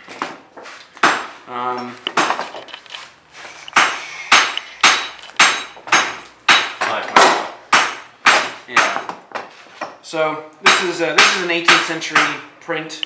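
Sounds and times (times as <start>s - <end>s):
hammer striking iron on anvil: 3.8s - 9.0s, 10.6s - 12.4s.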